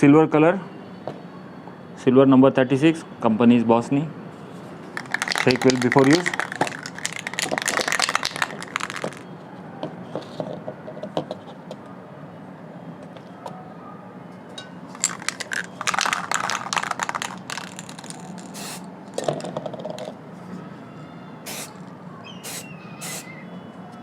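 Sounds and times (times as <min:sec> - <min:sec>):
spray can mixing ball rattling: 0:04.8 - 0:09.3, 0:14.9 - 0:20.2, 0:21.5 - 0:23.3
spray can clicks: 0:05.0 - 0:09.2, 0:15.0 - 0:20.1, 0:21.5 - 0:23.3
spray paint hiss: 0:05.0 - 0:09.2, 0:15.0 - 0:18.9, 0:21.5 - 0:23.3.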